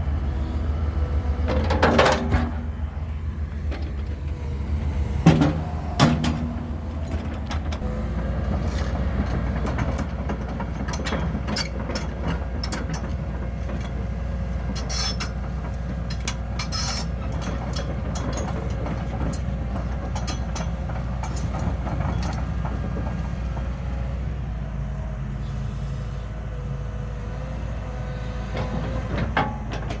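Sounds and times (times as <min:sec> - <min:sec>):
excavator diesel engine running: 0:00.0 - 0:30.0
metallic clanks and knocks: 0:01.4 - 0:02.9, 0:05.2 - 0:07.8, 0:09.1 - 0:23.7, 0:28.5 - 0:30.0.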